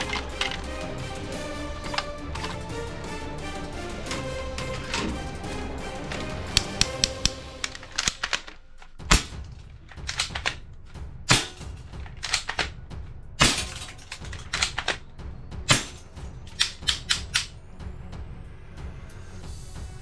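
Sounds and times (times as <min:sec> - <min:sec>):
toy gun sharp shots: 0:06.6 - 0:10.6, 0:11.3 - 0:12.7, 0:13.4 - 0:15.0, 0:15.7 - 0:17.5.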